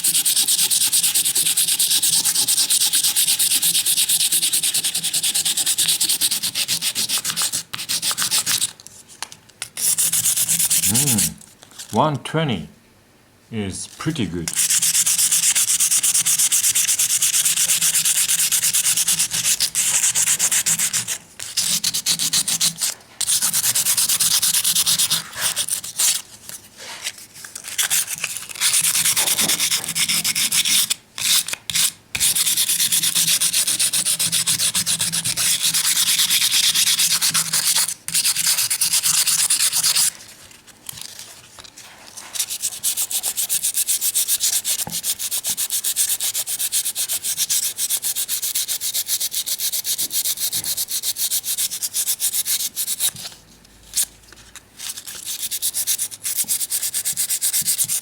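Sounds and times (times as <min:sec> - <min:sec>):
sandpaper rubbing on knife handle: 0:00.0 - 0:08.7, 0:09.8 - 0:11.4, 0:14.5 - 0:40.2, 0:41.8 - 0:53.4, 0:54.8 - 0:58.0.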